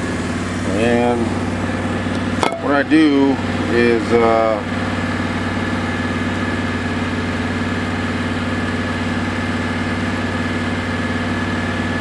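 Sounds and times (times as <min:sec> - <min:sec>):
welder engine idling: 0:00.0 - 0:12.0.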